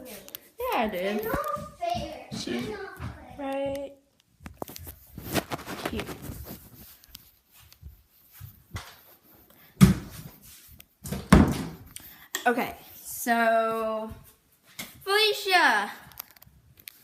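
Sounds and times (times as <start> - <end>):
rustling: 4.2 - 11.0.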